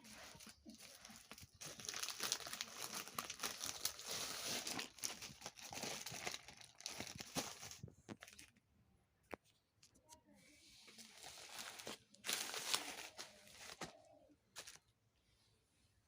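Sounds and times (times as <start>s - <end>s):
packaging crinkling: 0.1s - 8.6s, 11.2s - 14.0s.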